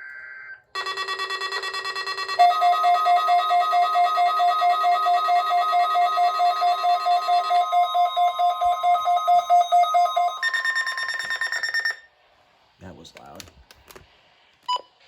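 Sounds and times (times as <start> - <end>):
loud electronic alarm beeping: 0.8 - 12.1.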